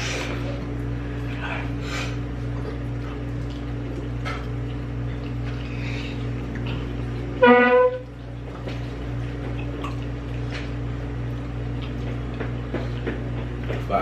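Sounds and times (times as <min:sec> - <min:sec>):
steady low hum: 0:00.0 - 0:14.0
horn honk: 0:07.4 - 0:08.1.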